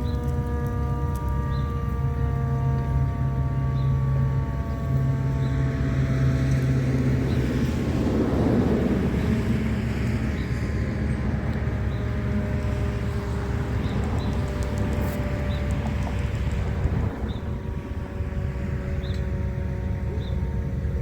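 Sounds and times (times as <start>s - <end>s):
low hum: 0.0s - 21.0s
siren winding down: 0.0s - 21.0s
rush of air and wind: 6.3s - 19.4s.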